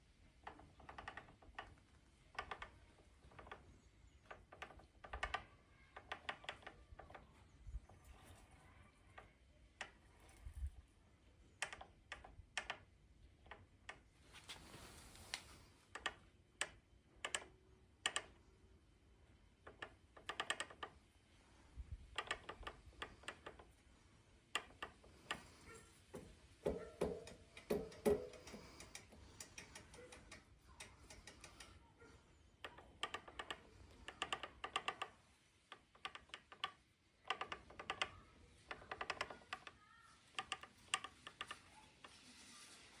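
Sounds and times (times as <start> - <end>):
bike motor clicking and rattling: 0.3 - 8.1, 19.6 - 21.1, 22.1 - 23.8, 24.5 - 31.8, 32.6 - 42.2.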